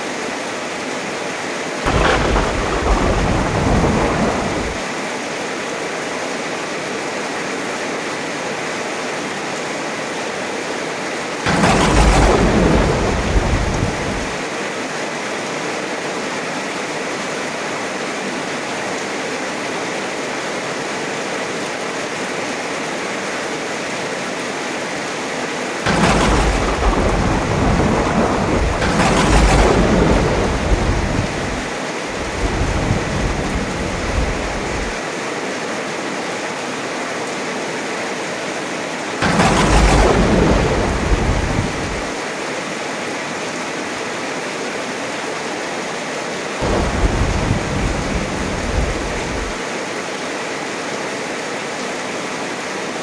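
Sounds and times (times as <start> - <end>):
heavy rain: 0.0 - 53.0
rolling thunder: 1.9 - 4.9, 11.5 - 14.4, 25.9 - 35.0, 39.2 - 42.2, 46.6 - 49.6.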